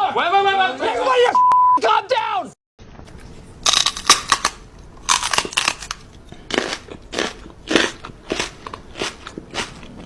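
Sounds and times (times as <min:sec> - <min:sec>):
loud crunching and chewing: 0:03.6 - 0:10.0.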